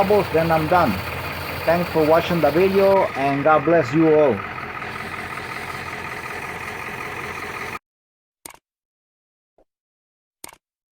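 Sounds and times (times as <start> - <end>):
car engine idling: 0.0 - 7.8.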